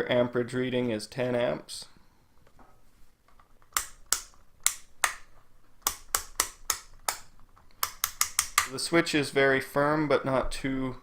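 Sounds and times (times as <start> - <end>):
rotary switch clicking: 3.7 - 8.7.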